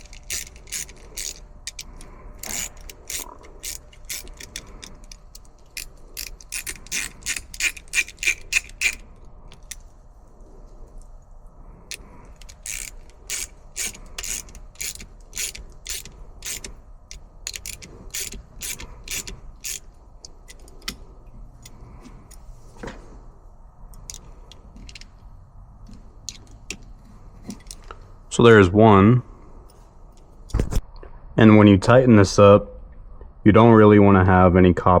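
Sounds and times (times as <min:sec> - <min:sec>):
socket ratchet clicking: 0:00.0 - 0:09.8, 0:11.9 - 0:21.0, 0:24.0 - 0:25.1.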